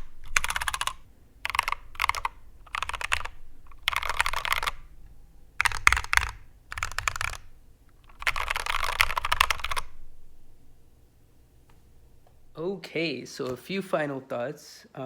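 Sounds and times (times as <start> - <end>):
mechanical keyboard typing: 0.0 - 10.4.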